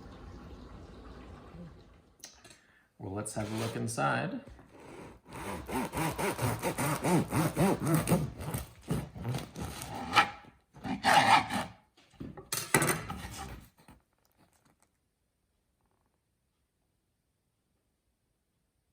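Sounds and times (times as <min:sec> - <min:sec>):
bread knife sawing crust: 0:03.4 - 0:03.9, 0:04.7 - 0:11.8, 0:13.1 - 0:13.8.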